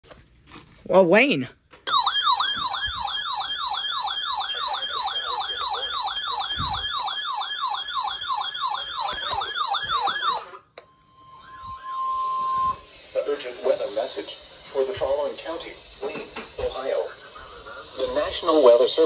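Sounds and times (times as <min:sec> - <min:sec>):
electronic alert siren warble: 0:01.9 - 0:12.9.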